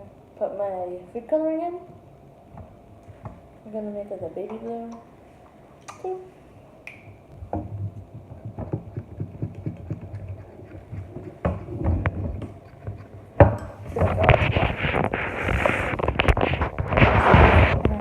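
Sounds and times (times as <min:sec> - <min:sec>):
spoon stirring in a bowl: 0:07.6 - 0:16.8.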